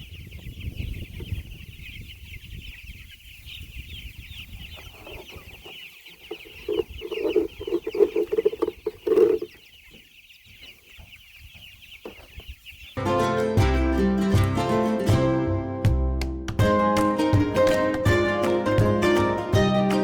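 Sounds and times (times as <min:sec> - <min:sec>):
chickens peeping: 0:00.0 - 0:13.0
lower-pitched chicken calls: 0:00.0 - 0:13.0.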